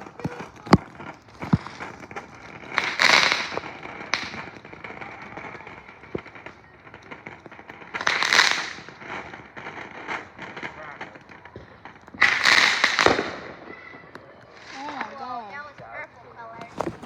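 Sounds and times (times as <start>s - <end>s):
firework pops: 0.0s - 17.0s
hissing crackling firework bursts: 0.0s - 17.0s.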